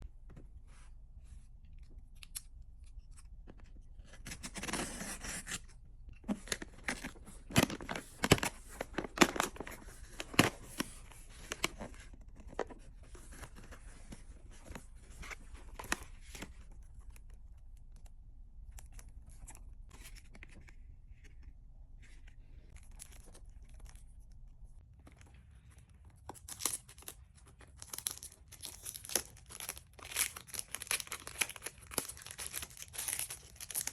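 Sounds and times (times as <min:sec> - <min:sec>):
packaging crackling and crinkling: 0:06.2 - 0:17.9, 0:22.7 - 0:33.9
packaging tearing: 0:06.3 - 0:11.9, 0:26.3 - 0:33.9.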